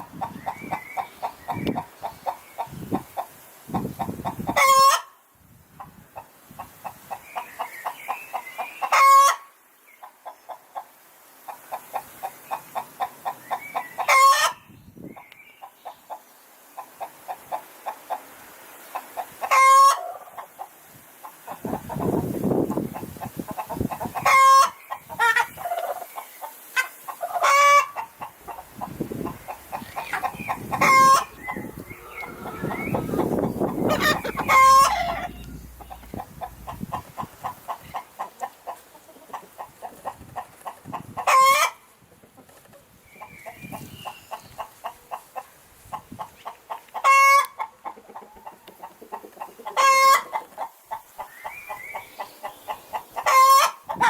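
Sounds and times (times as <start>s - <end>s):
hens clucking: 19.0s - 25.9s, 26.8s - 42.6s, 44.5s - 54.0s
hen squawking: 28.4s - 37.0s.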